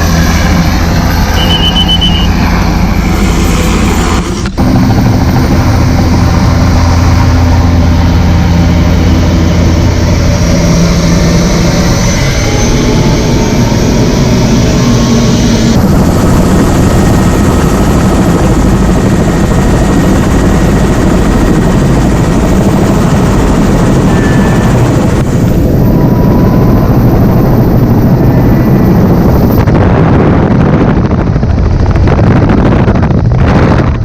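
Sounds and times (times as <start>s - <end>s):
helicopter rotor and engine: 0.0s - 34.0s.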